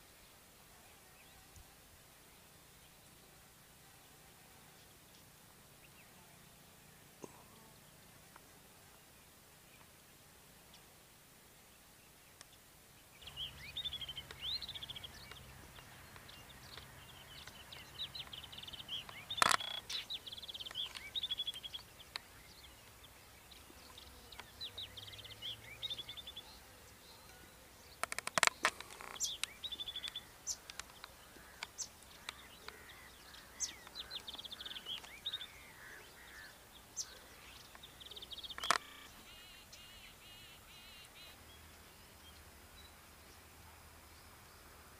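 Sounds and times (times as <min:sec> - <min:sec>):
small birds chirping and trilling: 0:12.1 - 0:44.7
sharp clicks: 0:38.5 - 0:39.0.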